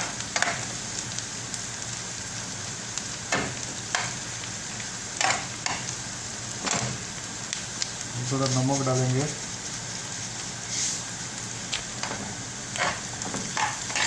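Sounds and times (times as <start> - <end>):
onions sizzling in hot oil: 0.0 - 14.0
spatula scraping a pan: 12.7 - 14.0.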